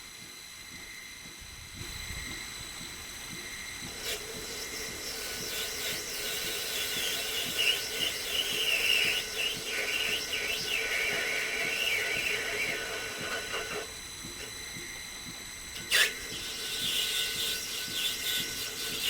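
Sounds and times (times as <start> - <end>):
lathe steady low tone: 0.0 - 19.0
lathe tool squealing rasp: 4.0 - 14.0, 15.8 - 19.0.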